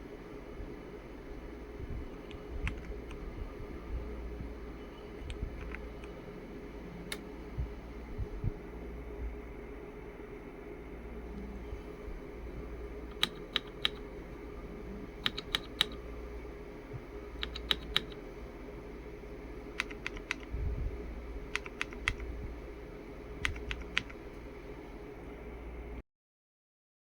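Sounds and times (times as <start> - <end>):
steady low hum: 0.0 - 26.0
mechanical keyboard key clacks: 13.1 - 14.0, 15.2 - 16.0, 17.4 - 18.2, 19.8 - 20.5, 21.5 - 22.3, 23.4 - 24.1.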